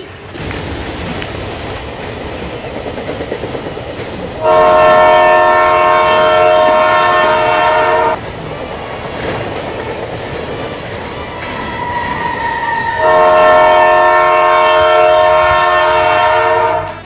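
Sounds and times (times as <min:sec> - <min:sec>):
train rumbling: 0:00.0 - 0:17.0
multi-tone train horn: 0:04.4 - 0:08.2, 0:11.2 - 0:17.0.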